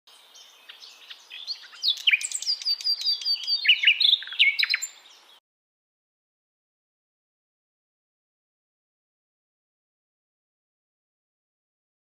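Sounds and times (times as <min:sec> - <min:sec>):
songbird singing: 0:00.1 - 0:05.4.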